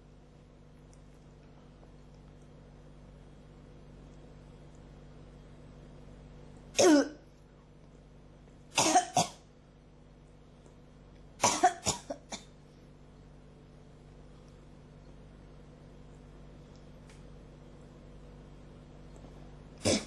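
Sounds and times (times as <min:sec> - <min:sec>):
person coughing: 0:06.8 - 0:07.2, 0:08.8 - 0:09.4, 0:11.4 - 0:12.5, 0:19.8 - 0:20.0.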